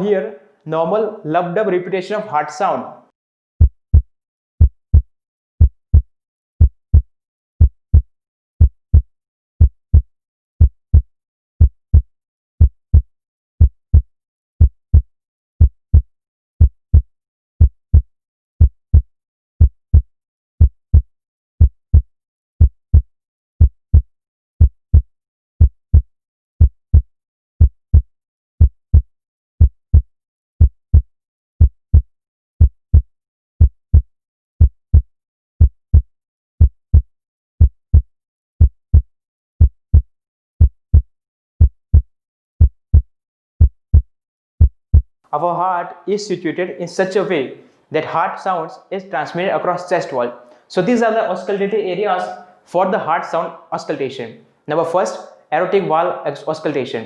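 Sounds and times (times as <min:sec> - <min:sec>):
heartbeat lub-dub: 0:03.6 - 0:45.1.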